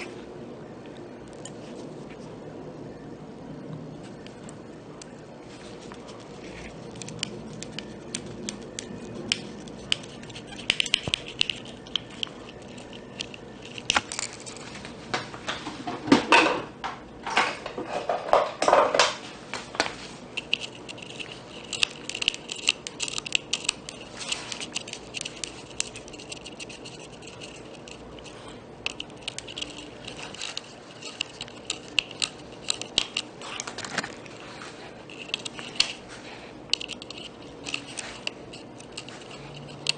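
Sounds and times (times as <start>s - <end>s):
small parts clicking and rattling: 6.3s - 14.8s, 20.3s - 34.4s, 35.0s - 39.9s.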